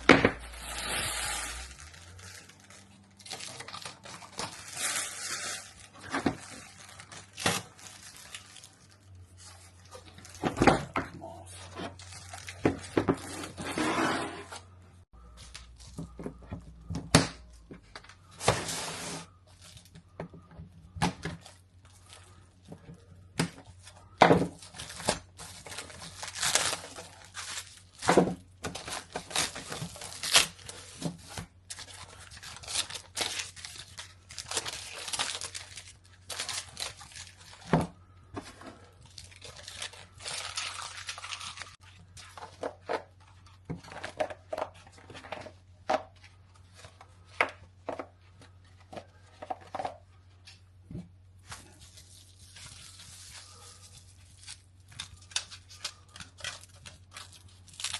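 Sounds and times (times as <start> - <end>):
plastic wrapping crinkling: 0.4 - 10.6, 11.9 - 13.6, 21.4 - 38.1, 38.8 - 45.1, 51.4 - 57.9.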